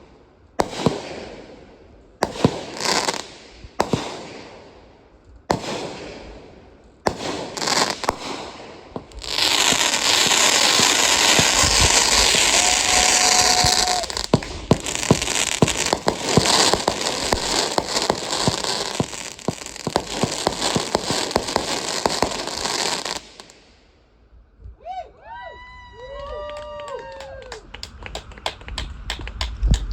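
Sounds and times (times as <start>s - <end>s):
firework bangs: 0.0s - 23.8s
firework pops and crackles: 0.6s - 1.6s, 2.2s - 23.8s, 27.6s - 29.9s
firework crackling hiss: 0.6s - 4.8s, 5.4s - 24.0s.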